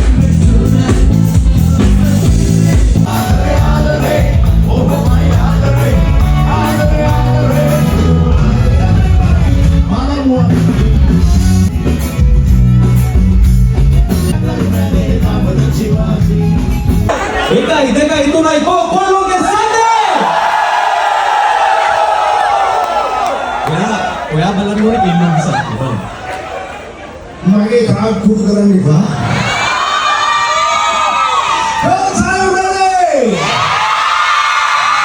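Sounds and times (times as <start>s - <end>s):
person singing: 0.0s - 11.5s, 14.3s - 16.8s
band music with heavy bass: 0.0s - 18.5s.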